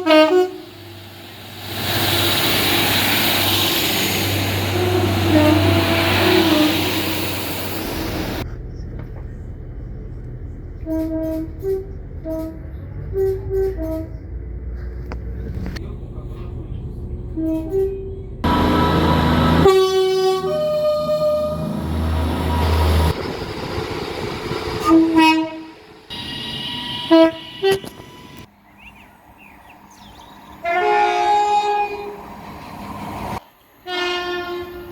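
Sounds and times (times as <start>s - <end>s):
train horn: 0.0s - 1.2s, 3.5s - 8.4s, 10.8s - 14.2s, 17.4s - 23.2s, 24.8s - 28.5s, 30.6s - 32.2s, 33.8s - 34.9s
passing train rumble: 0.0s - 34.9s
short horn toots: 24.8s - 28.5s.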